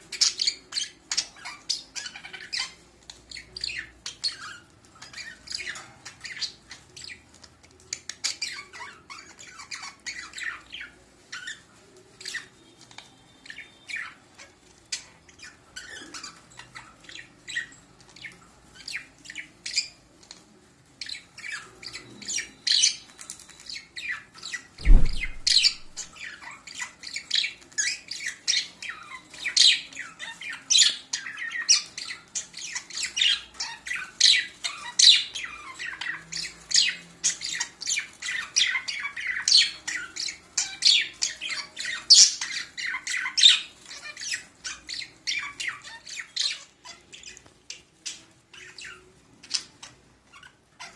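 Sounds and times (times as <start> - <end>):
thump: 24.8 - 26.1.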